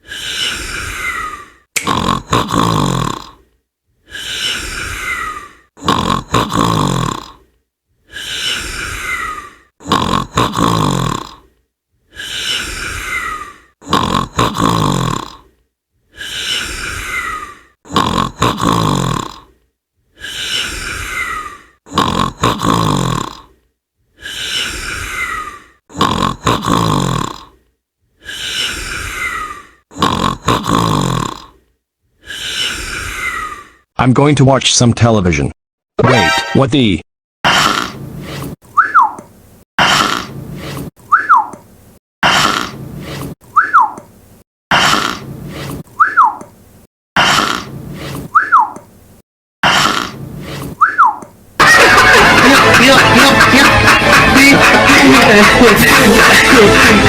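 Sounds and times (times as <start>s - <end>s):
snore-like sound effect: 0.3s - 3.4s, 4.1s - 7.4s, 8.2s - 11.5s, 12.2s - 15.5s, 16.2s - 19.6s, 20.3s - 23.6s, 24.4s - 27.6s, 28.3s - 31.6s, 37.5s - 38.6s, 39.8s - 40.9s, 42.2s - 43.4s, 44.7s - 45.8s, 47.2s - 48.3s, 49.6s - 50.8s.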